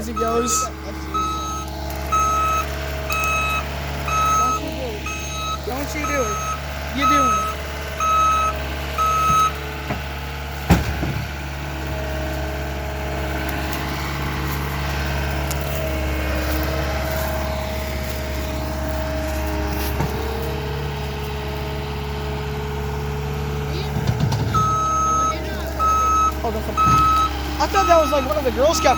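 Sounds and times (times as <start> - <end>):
reversing alarm beep: 0.0 - 9.6, 24.4 - 28.9
skid steer engine running: 0.0 - 28.9.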